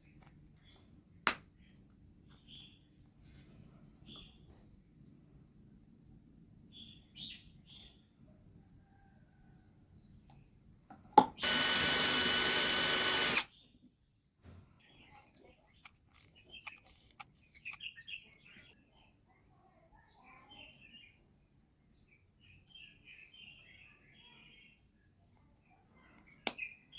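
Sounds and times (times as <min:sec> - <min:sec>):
faint bird chirps: 0:06.7 - 0:10.2
small power tool whining: 0:11.3 - 0:13.5.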